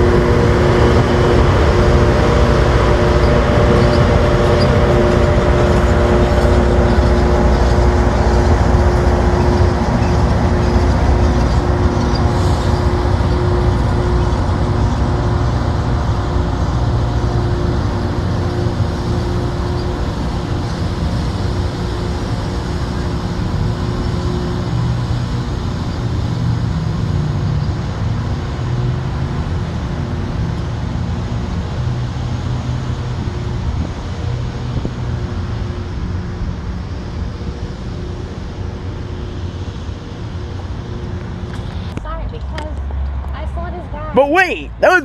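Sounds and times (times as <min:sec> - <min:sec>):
rough hissing noise: 0:00.0 - 0:27.9
rail grinder machine drone: 0:00.0 - 0:44.8
low engine hum: 0:00.0 - 0:45.0.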